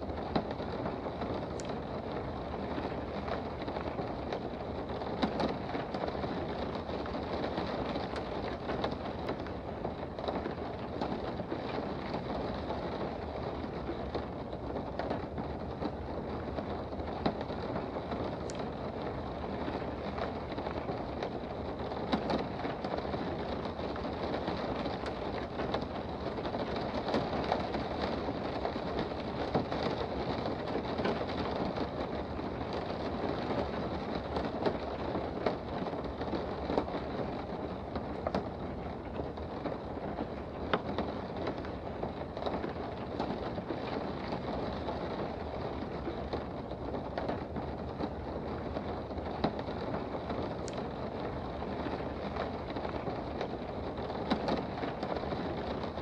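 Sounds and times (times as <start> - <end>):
raindrops ticking: 0.0 - 56.0
steady rain hiss: 0.0 - 56.0.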